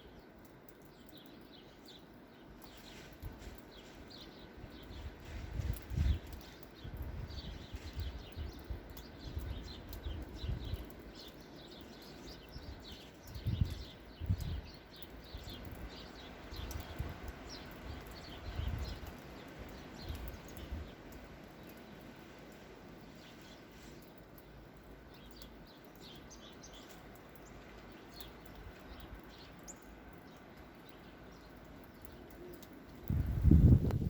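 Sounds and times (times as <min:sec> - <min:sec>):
small birds chirping: 0:00.0 - 0:34.0.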